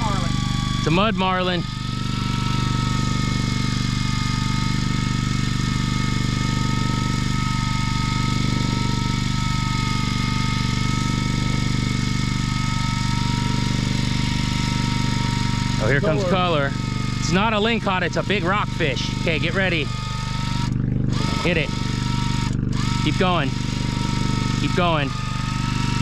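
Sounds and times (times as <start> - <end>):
electric fishing reel motor whine: 0.0 - 26.0
boat diesel engine idling: 14.9 - 25.1.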